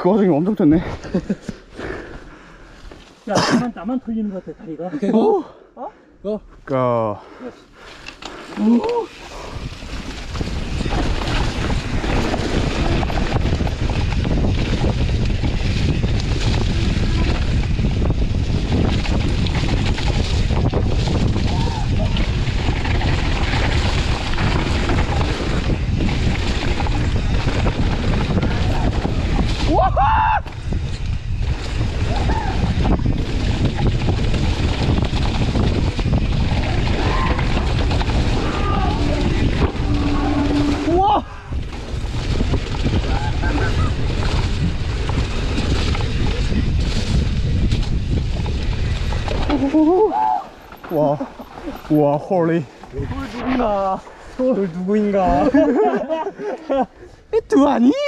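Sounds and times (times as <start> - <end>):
mountain bike rattling on trail: 6.8 - 29.8, 30.4 - 57.0
wind on microphone: 8.6 - 54.6.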